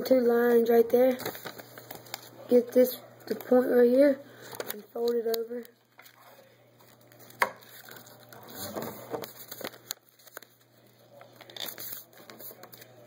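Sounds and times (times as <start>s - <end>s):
paper rustling and crinkling: 1.1s - 2.3s, 6.0s - 13.0s.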